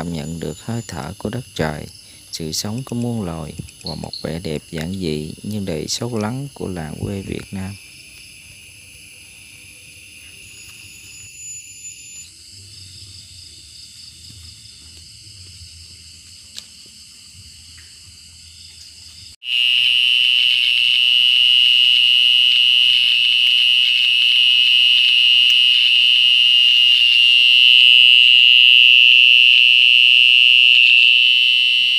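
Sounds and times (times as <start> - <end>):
crickets trilling: 0.0 - 31.9
loud shrill insect trill: 0.0 - 31.9
low pulsing frog call: 19.4 - 31.9.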